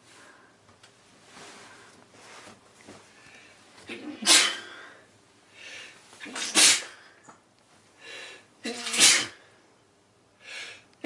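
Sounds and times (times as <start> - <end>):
person sneezing: 3.9 - 4.8, 6.2 - 7.0, 8.6 - 9.4
person breathing: 4.6 - 6.0, 8.0 - 8.5, 10.4 - 10.9.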